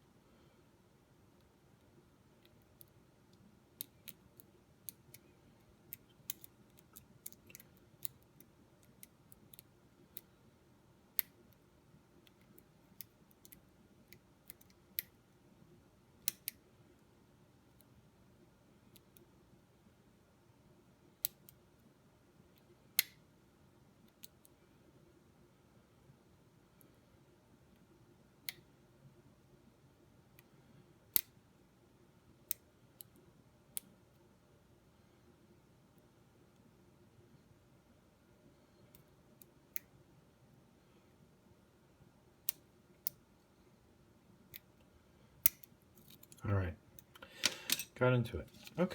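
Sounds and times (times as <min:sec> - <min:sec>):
lock pick metallic clicks: 0:47.1 - 0:47.9.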